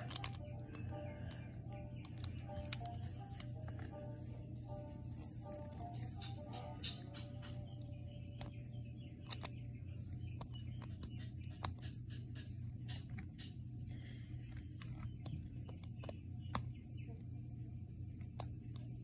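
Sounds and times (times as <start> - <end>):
lock pick metallic clicks: 0.0 - 4.0, 5.6 - 8.6, 9.2 - 9.6
low steady hum: 0.0 - 19.0.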